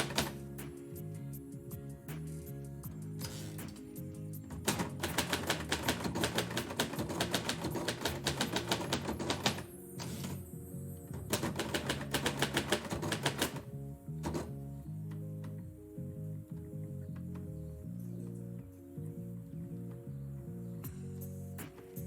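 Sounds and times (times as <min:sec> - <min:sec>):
typewriter keys striking: 0:00.0 - 0:00.4, 0:04.6 - 0:10.4, 0:11.2 - 0:14.5
background music: 0:00.0 - 0:22.0.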